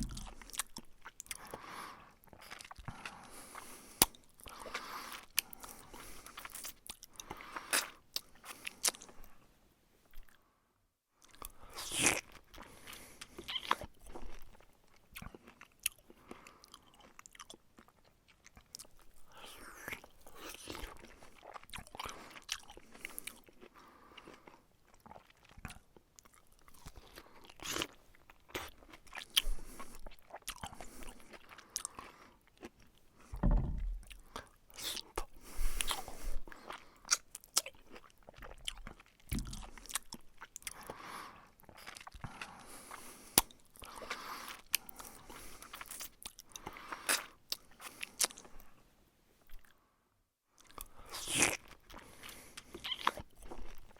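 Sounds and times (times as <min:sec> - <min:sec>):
person chewing crunchy food: 0:00.0 - 0:09.4, 0:11.2 - 0:48.8, 0:50.5 - 0:53.9
dull low thuds: 0:33.4 - 0:34.2.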